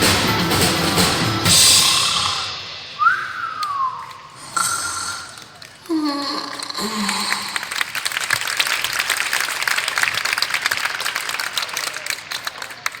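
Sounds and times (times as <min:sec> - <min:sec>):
falling vocal sound: 0:01.5 - 0:07.8
hand clapping: 0:03.6 - 0:13.0.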